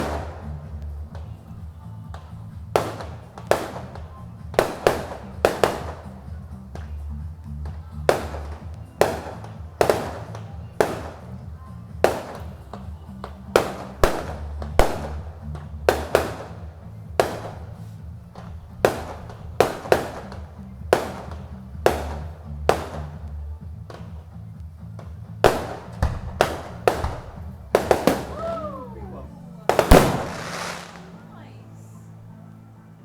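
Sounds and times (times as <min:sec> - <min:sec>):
fireworks bangs: 0:00.0 - 0:31.6
steady low rumble: 0:29.2 - 0:31.4.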